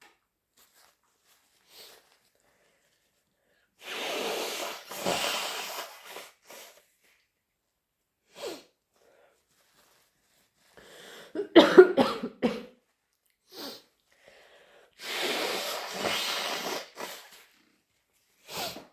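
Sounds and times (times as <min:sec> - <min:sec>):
person sneezing: 0:03.8 - 0:06.4, 0:15.0 - 0:17.4
person coughing: 0:11.4 - 0:12.8.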